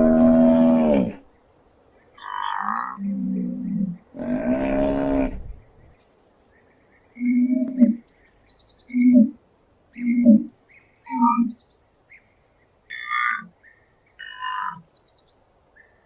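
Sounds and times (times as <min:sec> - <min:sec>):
low animal calls: 0:00.0 - 0:01.2, 0:02.2 - 0:05.6
small birds chirping and trilling: 0:01.2 - 0:09.3, 0:10.0 - 0:16.0
longer high-pitched animal calls: 0:10.0 - 0:11.6.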